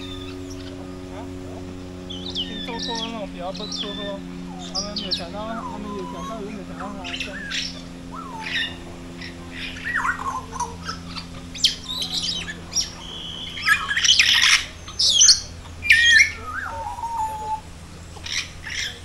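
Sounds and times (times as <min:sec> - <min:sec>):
birds calling and squawking: 0:00.0 - 0:19.0
steady low hum: 0:00.0 - 0:19.0.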